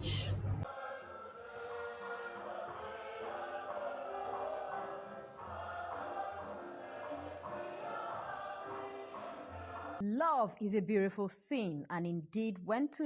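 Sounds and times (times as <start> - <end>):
choir singing held notes: 0.0 - 10.0.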